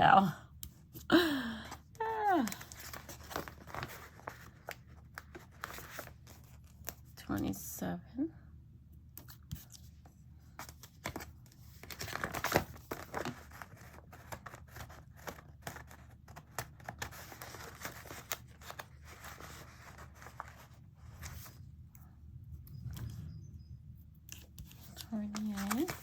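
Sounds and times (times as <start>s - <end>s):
stickers peeling and crinkling: 24.3s - 26.0s.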